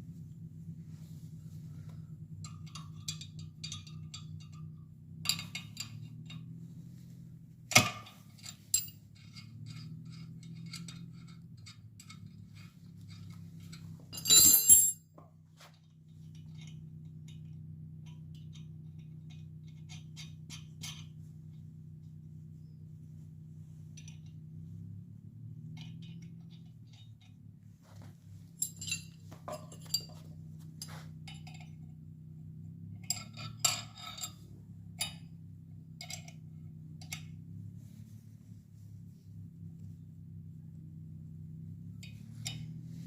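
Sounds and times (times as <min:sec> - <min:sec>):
low electrical hum: 0:00.0 - 0:43.0
metal tools clinking: 0:02.4 - 0:06.6, 0:07.7 - 0:15.0, 0:25.7 - 0:27.4, 0:28.0 - 0:31.9, 0:33.0 - 0:35.3.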